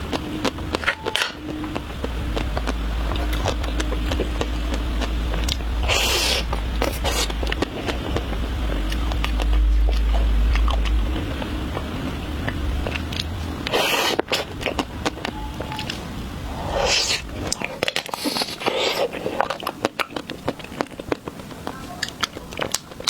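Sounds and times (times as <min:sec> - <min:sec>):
low rumble: 0:00.0 - 0:18.0
hissy slurp: 0:05.8 - 0:08.0, 0:13.6 - 0:14.5, 0:16.6 - 0:19.8.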